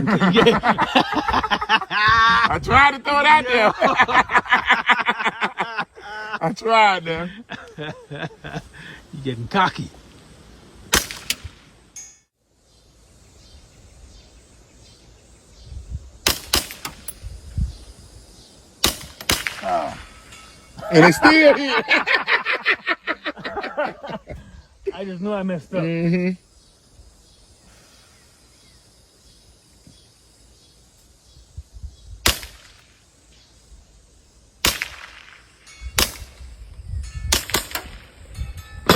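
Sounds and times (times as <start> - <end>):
airsoft gun shots: 10.9 - 11.6, 16.2 - 17.1, 18.8 - 19.9, 32.2 - 32.8, 34.6 - 35.4, 36.0 - 36.4.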